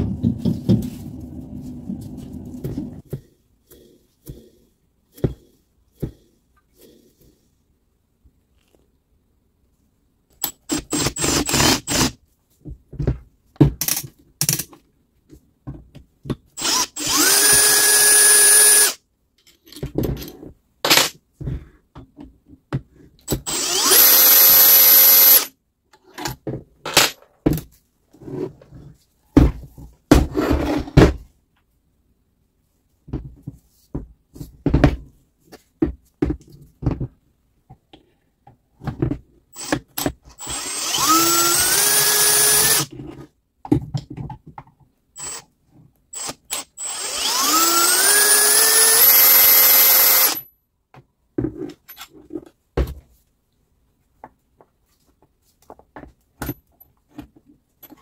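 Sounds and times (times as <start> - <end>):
drill spinning with rising whine: 16.6 - 19.0, 23.3 - 25.5, 39.6 - 39.8, 40.4 - 42.9, 45.2 - 45.4, 46.2 - 50.4
tools and parts clattering: 19.3 - 21.2, 55.6 - 58.0.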